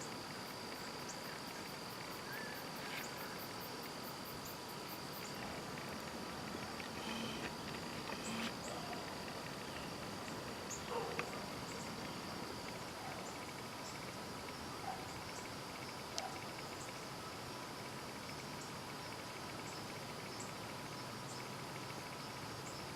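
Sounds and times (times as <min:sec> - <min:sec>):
crickets trilling: 0:00.0 - 0:22.9
faint clicks: 0:05.1 - 0:14.6.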